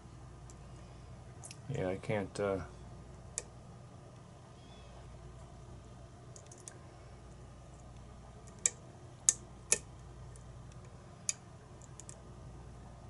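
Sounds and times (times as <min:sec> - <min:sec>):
lock pick metallic ticks: 0:08.4 - 0:09.9.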